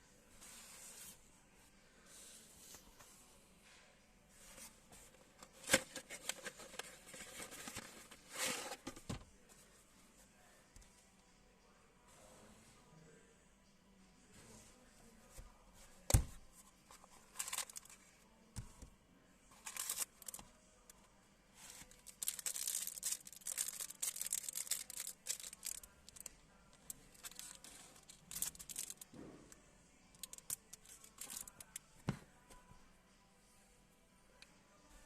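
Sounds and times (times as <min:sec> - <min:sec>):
packaging rustling and crinkling: 0:21.8 - 0:29.1.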